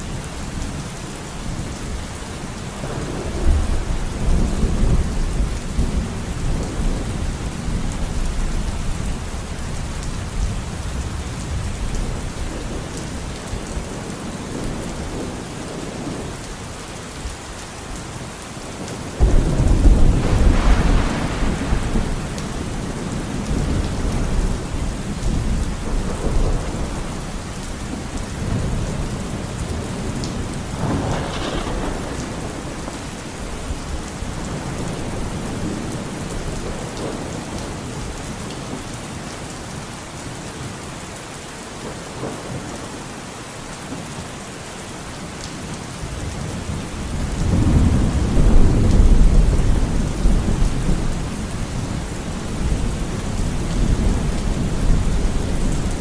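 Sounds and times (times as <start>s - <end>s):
steady rain falling: 0.0s - 56.0s
rolling thunder: 2.8s - 13.6s, 19.2s - 38.1s, 46.2s - 56.0s
sharp thunder clap: 19.2s - 27.0s, 30.8s - 33.1s.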